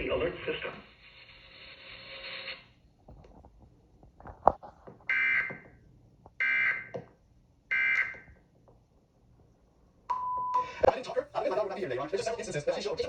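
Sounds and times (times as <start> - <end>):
harsh digital data bursts: 0.2 - 2.7.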